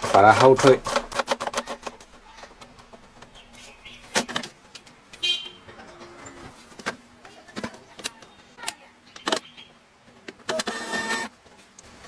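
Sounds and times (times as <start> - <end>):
paper-feed motor whirring: 0.0 - 3.0, 10.5 - 12.0
printer clicks: 0.0 - 3.4, 10.4 - 11.3.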